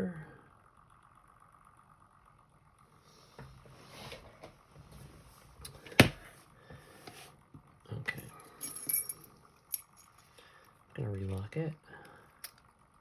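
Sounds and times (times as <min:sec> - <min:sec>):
lockpicking tools clicking: 0:12.4 - 0:12.6.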